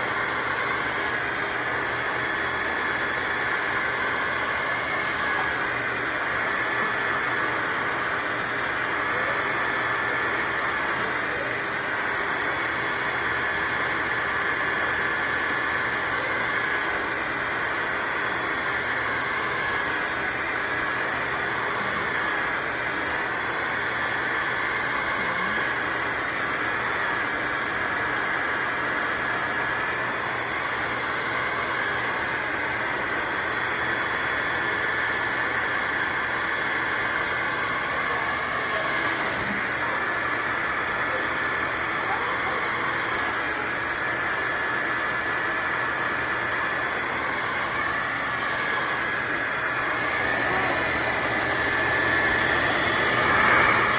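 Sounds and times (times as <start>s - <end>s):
vacuum mop motor whine: 0.0s - 53.9s
rushing suction noise: 45.0s - 53.9s.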